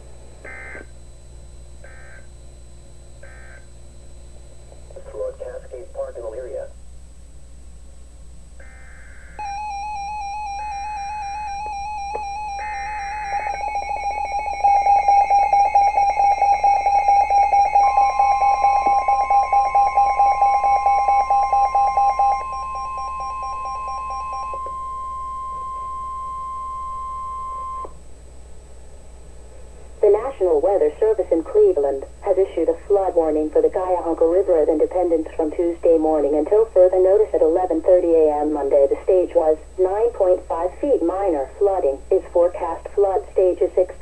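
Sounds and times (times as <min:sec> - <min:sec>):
warbling electronic alarm: 0:00.4 - 0:04.2, 0:08.6 - 0:28.0
buzzy data bursts: 0:00.4 - 0:06.7, 0:08.6 - 0:27.8
steady alert tone: 0:08.6 - 0:25.1.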